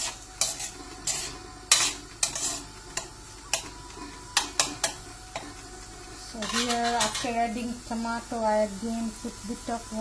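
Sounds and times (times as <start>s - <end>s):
spoon stirring curry: 0.0s - 5.8s, 6.4s - 7.2s
faint sizzle: 0.0s - 10.0s.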